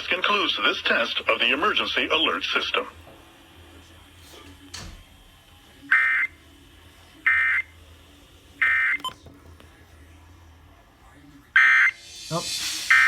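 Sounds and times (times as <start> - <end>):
digital data warble bursts: 11.6 - 13.0.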